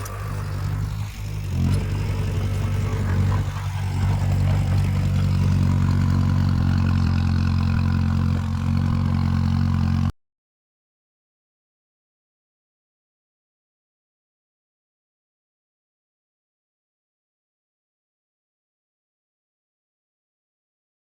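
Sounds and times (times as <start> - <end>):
diesel engine running: 0.0 - 10.1.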